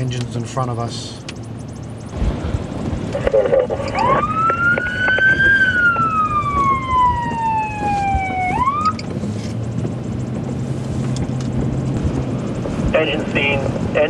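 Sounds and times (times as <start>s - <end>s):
vehicle engine hum with road noise: 0.0s - 14.0s
siren wailing: 3.5s - 9.2s.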